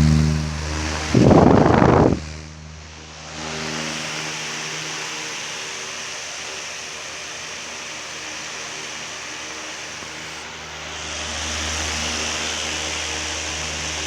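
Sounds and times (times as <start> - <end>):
fan air rushing: 0.0 - 6.1
faint motor hum: 0.0 - 14.0.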